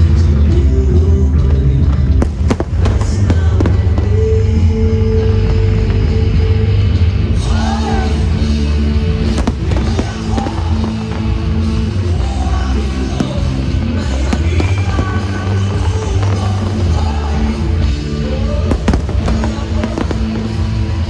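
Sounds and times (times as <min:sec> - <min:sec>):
music with heavy bass and vocals: 0:00.0 - 0:21.0
fireworks bangs: 0:01.5 - 0:21.0.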